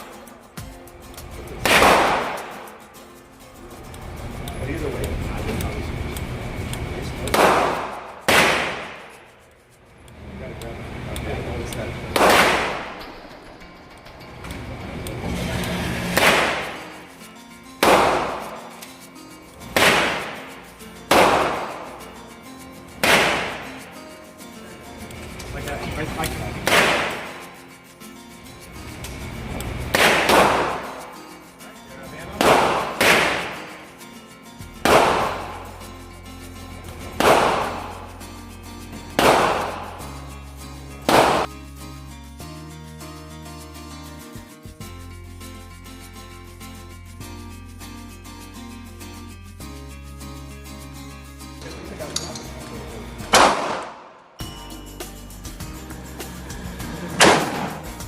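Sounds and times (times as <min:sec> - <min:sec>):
faint music: 0:00.0 - 0:53.8
gunshots: 0:01.6 - 0:02.8, 0:07.3 - 0:09.3, 0:12.1 - 0:13.2, 0:16.0 - 0:17.0, 0:17.8 - 0:18.7, 0:19.6 - 0:22.0, 0:23.0 - 0:23.8, 0:26.6 - 0:27.5, 0:29.8 - 0:31.2, 0:32.4 - 0:33.9, 0:34.8 - 0:35.7, 0:37.0 - 0:38.0, 0:39.2 - 0:40.0, 0:41.1 - 0:41.5, 0:53.3 - 0:54.2, 0:57.2 - 0:57.8.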